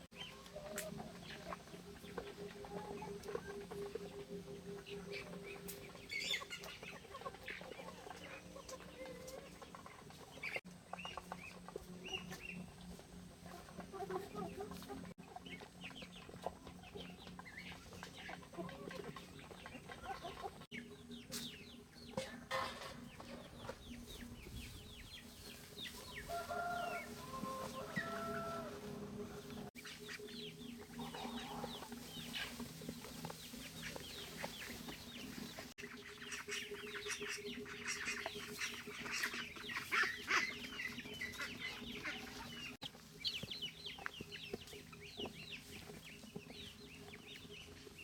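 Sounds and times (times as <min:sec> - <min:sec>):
chickens clucking: 0:00.0 - 0:48.0.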